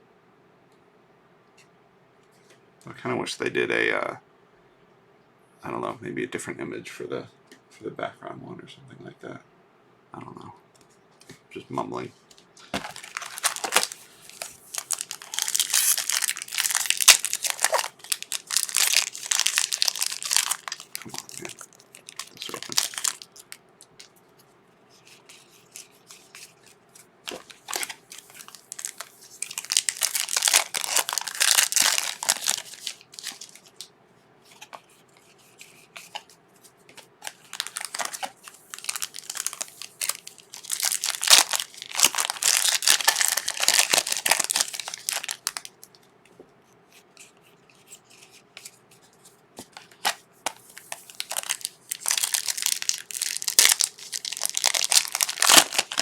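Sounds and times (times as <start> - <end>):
wrapper rustling: 12.6 - 24.1, 25.2 - 33.9, 37.0 - 45.9, 49.8 - 56.0
wrapper tearing and crinkling: 12.8 - 24.1, 27.3 - 33.9, 37.2 - 45.9, 50.0 - 56.0.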